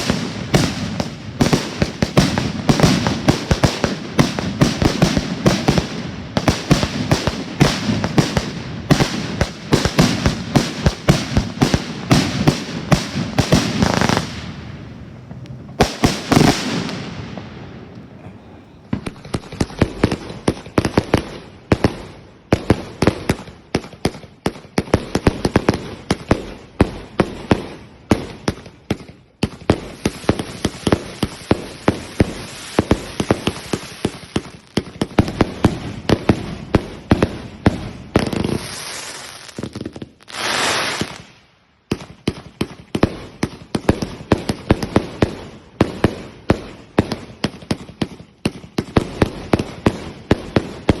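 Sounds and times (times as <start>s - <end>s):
fireworks bangs and cracks: 0.0s - 51.0s
fireworks crackling and popping: 0.0s - 51.0s
firework boom: 11.2s - 19.2s.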